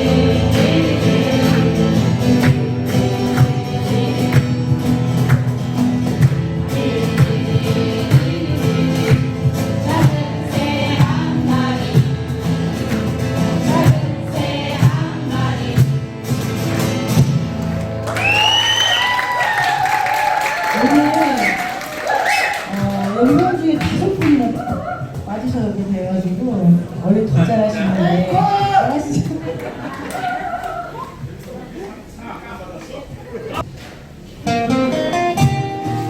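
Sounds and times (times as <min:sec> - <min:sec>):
group of voices singing: 0:00.0 - 0:16.6
acoustic guitars strumming: 0:00.0 - 0:18.4, 0:33.6 - 0:36.0.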